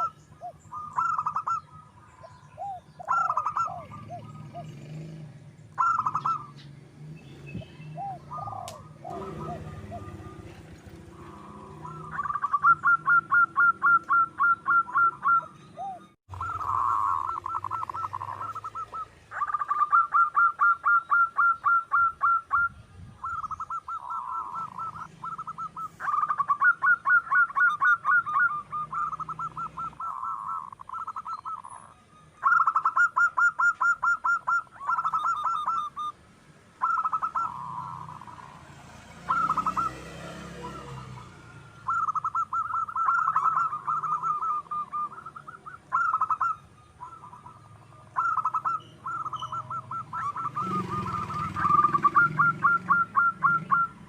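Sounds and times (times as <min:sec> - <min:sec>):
dove calling in rapid notes: 0:00.0 - 0:54.0.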